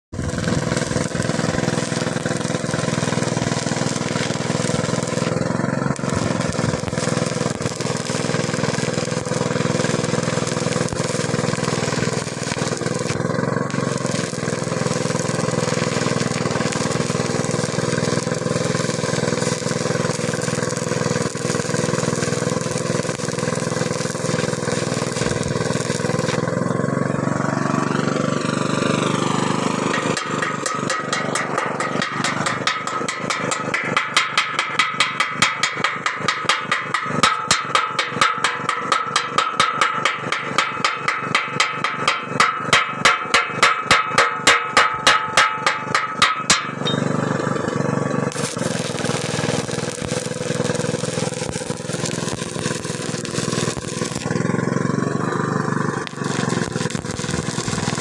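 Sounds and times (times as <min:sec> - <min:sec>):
engine running with low hum: 0:00.2 - 0:58.0
hiss: 0:47.6 - 0:54.3, 0:56.0 - 0:58.0.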